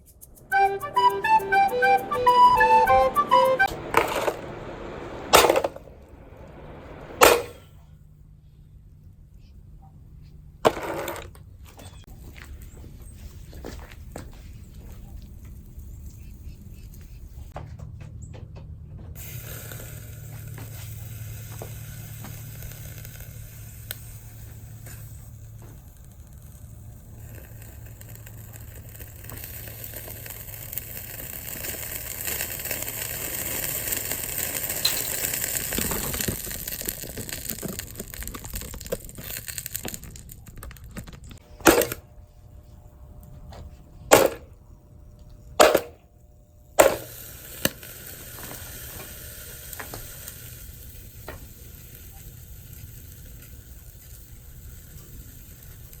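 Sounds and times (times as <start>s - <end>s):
fan heater humming and hissing: 0.3s - 10.6s, 12.6s - 38.2s, 39.2s - 56.0s
loud sharp impact: 3.6s - 7.8s.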